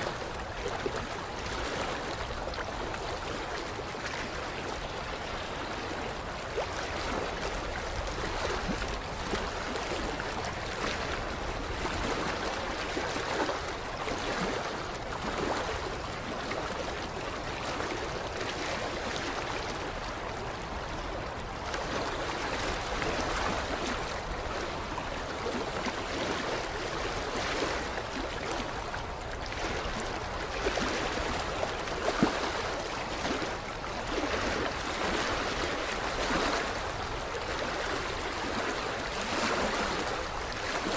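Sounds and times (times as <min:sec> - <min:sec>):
water lapping against shoreline: 0:00.0 - 0:40.9.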